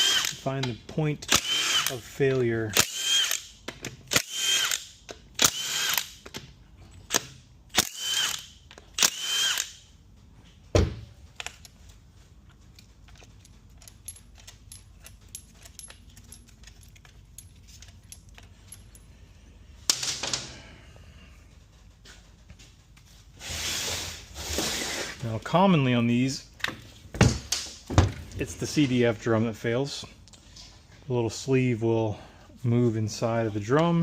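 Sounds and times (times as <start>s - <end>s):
faint clicks of parts handled: 11.3s - 20.5s, 30.0s - 31.1s.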